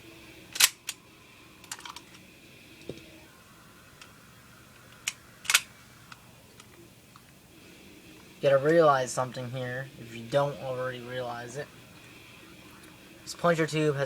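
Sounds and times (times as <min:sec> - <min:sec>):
pistol mechanical clicks: 0:00.5 - 0:01.0, 0:04.0 - 0:07.4.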